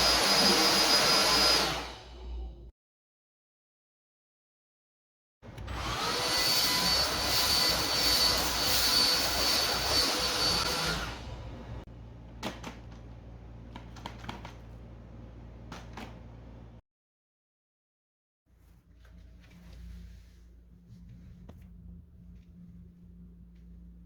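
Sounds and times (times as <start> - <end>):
faint low hum: 18.5 - 24.0.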